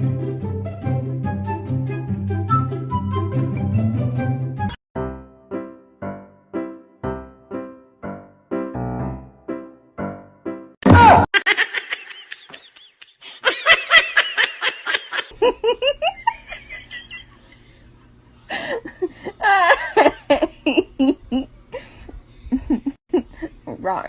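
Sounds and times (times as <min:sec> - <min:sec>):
laughter in quick bursts: 0:11.4 - 0:17.9.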